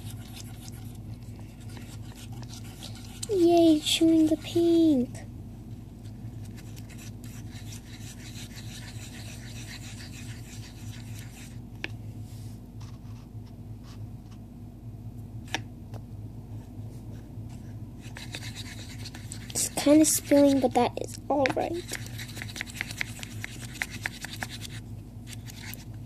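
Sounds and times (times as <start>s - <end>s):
utensil stirring slime in bowl: 0.0s - 11.9s, 18.0s - 26.0s
steady low hum: 0.0s - 26.0s.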